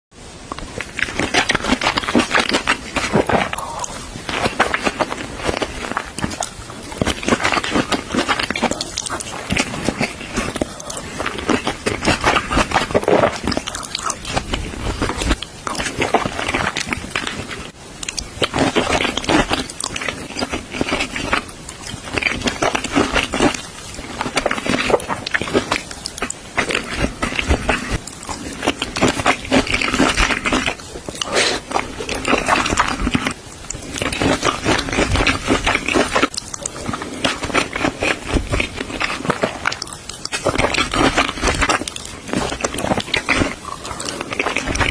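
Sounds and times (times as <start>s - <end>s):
person chewing food: 0.5s - 44.9s
wet mouth clicks and smacks: 17.9s - 23.5s.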